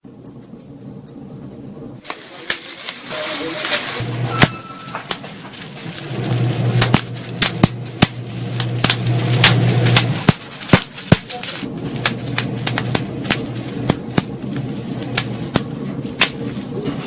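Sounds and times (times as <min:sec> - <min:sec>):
bubble wrap crumpled and popping: 0:02.0 - 0:17.0
steady low hum: 0:04.0 - 0:17.0.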